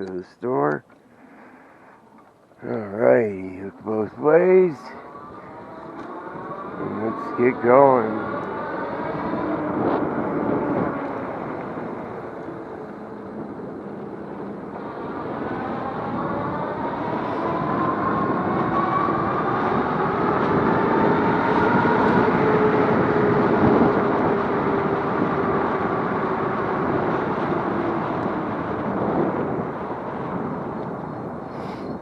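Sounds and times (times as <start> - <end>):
wind rushing over microphone: 1.4 - 32.0.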